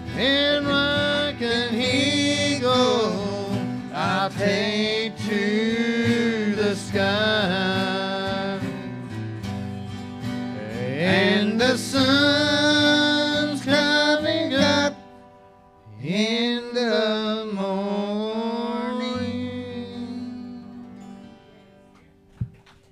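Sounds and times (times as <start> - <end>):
person singing: 0.0 - 9.1, 10.6 - 15.0
strummed acoustic guitar: 0.0 - 22.9.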